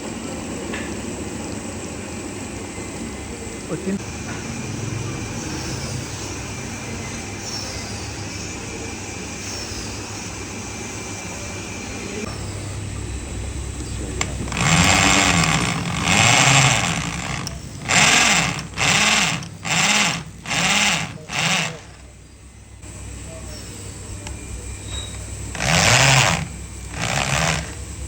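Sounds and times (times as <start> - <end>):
tool working wood: 14.2 - 22.2, 25.5 - 27.9.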